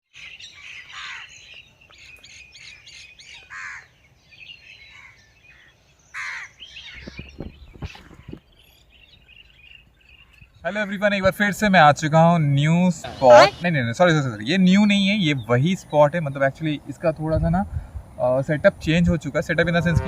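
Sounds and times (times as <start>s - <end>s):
birds chirping: 0.1s - 20.0s
harsh caw-like bird calls: 0.2s - 1.5s, 2.7s - 4.0s, 4.9s - 7.1s, 13.0s - 13.7s.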